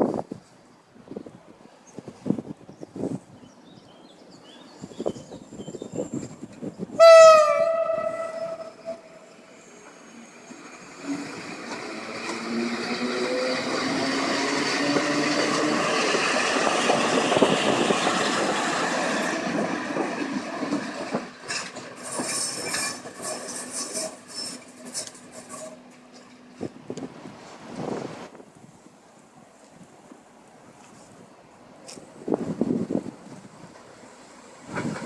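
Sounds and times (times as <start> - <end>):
train wheels clattering: 10.6 - 26.8
train motor whine: 20.7 - 27.3
wheel squeals: 21.4 - 26.4.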